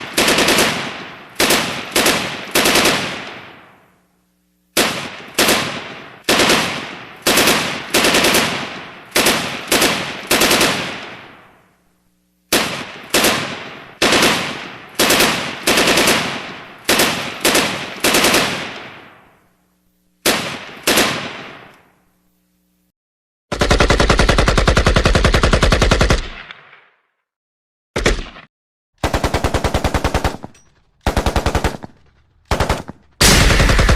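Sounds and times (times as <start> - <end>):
automatic gunfire bursts: 0.0 - 3.6, 4.8 - 11.4, 12.5 - 19.0, 20.2 - 21.7, 23.5 - 26.5, 29.0 - 33.9
echoing gunshots: 0.0 - 4.0, 4.8 - 11.7, 12.5 - 19.4, 20.2 - 21.7, 28.0 - 33.9.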